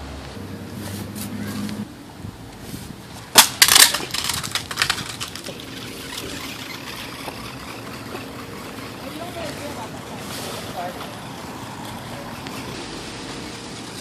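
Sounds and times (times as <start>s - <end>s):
toy car crashing with clatter: 3.3s - 12.8s.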